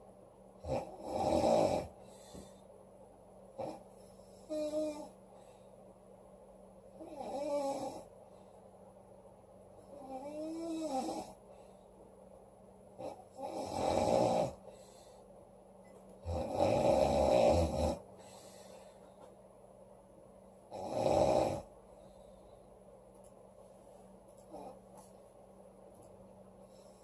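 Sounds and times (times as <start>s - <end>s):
woman snoring: 0.6s - 2.0s, 3.6s - 5.2s, 7.0s - 8.1s, 9.9s - 11.4s, 13.0s - 14.7s, 16.2s - 18.0s, 20.7s - 21.7s, 24.5s - 24.8s.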